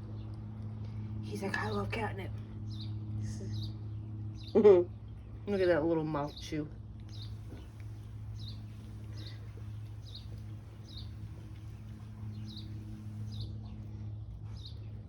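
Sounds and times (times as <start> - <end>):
steady low hum: 0.0 - 15.0
small bird chirping: 7.1 - 13.5.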